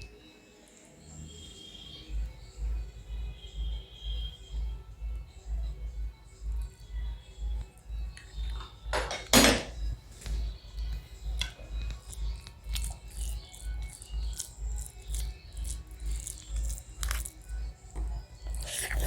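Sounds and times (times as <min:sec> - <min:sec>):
close-miked eating sounds: 0:00.0 - 0:19.0
music with deep steady beat: 0:00.0 - 0:19.0
small clicks and smacks: 0:10.2 - 0:19.0.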